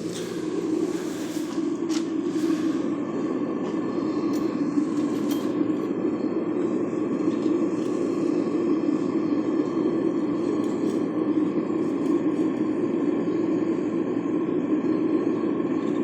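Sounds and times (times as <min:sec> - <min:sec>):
furnace rushing noise: 0:00.0 - 0:05.8.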